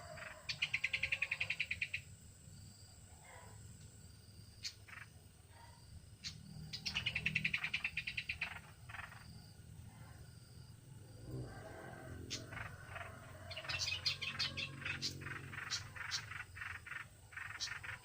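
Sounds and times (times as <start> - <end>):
bird chattering: 6.2 - 9.2, 12.3 - 18.0.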